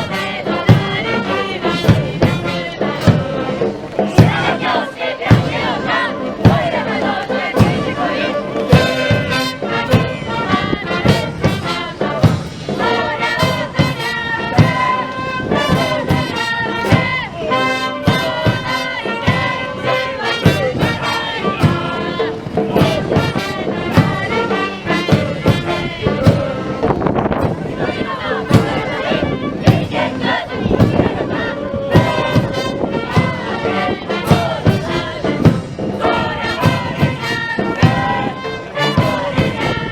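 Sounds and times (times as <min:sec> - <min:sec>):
squad shouting in unison: 0:00.0 - 0:26.8, 0:27.6 - 0:39.9
brass band playing: 0:00.0 - 0:39.9
steady drum beats: 0:00.0 - 0:39.9.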